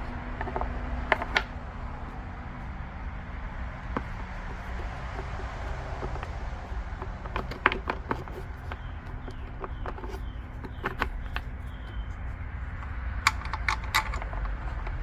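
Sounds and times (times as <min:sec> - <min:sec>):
tools clicking and tapping: 0:00.3 - 0:01.6, 0:03.9 - 0:15.0.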